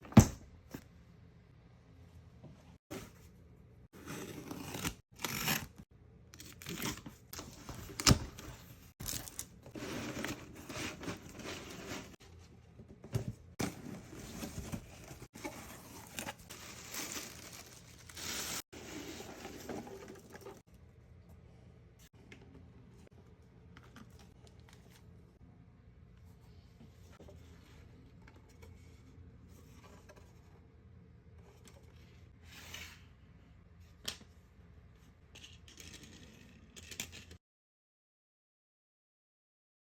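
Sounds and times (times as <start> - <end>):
packaging tearing and crinkling: 9.0 - 9.6, 15.8 - 18.6.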